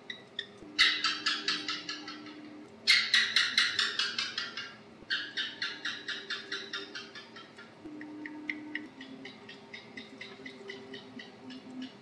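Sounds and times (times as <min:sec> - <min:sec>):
gecko chirping: 0:00.0 - 0:12.0.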